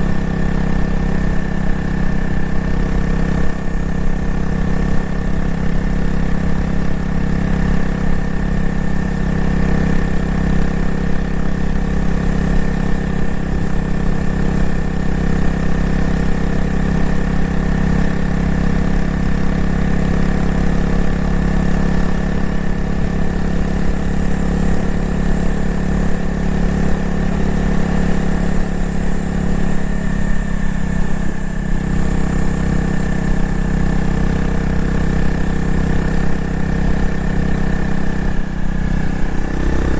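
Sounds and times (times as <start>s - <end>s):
motorcycle engine running steadily: 0.0s - 39.9s.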